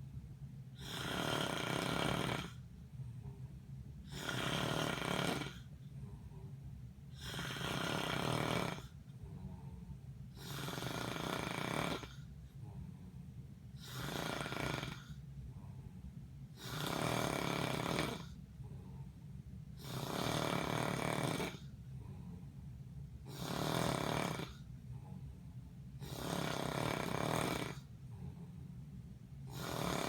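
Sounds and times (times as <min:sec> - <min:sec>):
quiet breathing: 0:00.7 - 0:30.0
person snoring: 0:00.8 - 0:02.6, 0:04.1 - 0:06.5, 0:07.2 - 0:09.8, 0:10.4 - 0:12.2, 0:13.8 - 0:15.8, 0:16.6 - 0:19.0, 0:19.8 - 0:22.4, 0:23.3 - 0:24.6, 0:26.0 - 0:28.6, 0:29.5 - 0:30.0.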